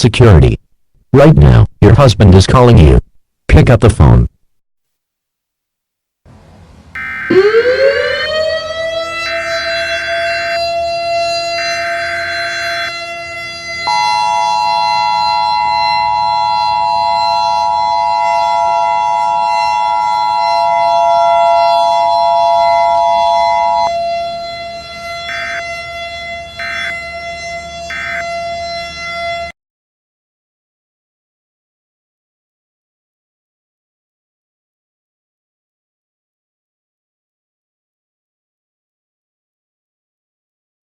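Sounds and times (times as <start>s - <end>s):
civil defense siren: 7.0s - 29.6s
buzzing data bursts: 26.6s - 27.1s, 27.9s - 28.3s.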